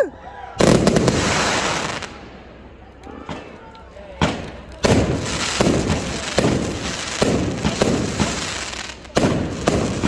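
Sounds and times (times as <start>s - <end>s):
fireworks bangs: 0.6s - 2.4s, 4.2s - 10.0s
fireworks crackling: 0.6s - 2.5s, 4.2s - 10.0s.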